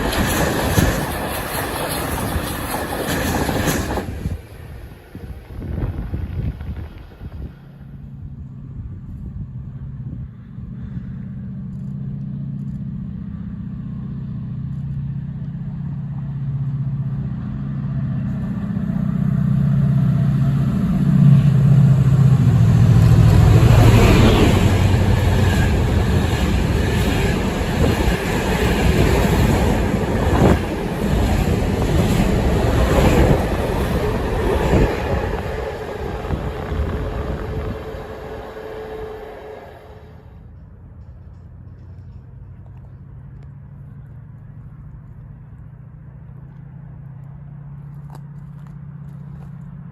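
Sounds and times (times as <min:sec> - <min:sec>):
wheels clattering over rail joints: 0:00.0 - 0:04.6
diesel locomotive engine: 0:00.0 - 0:49.9
train rolling rumble: 0:00.0 - 0:49.9.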